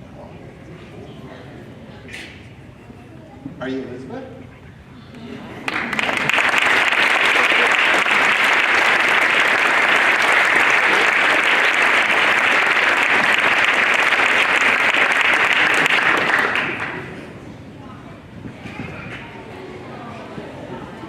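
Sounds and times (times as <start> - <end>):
audience clapping: 5.6 - 17.2.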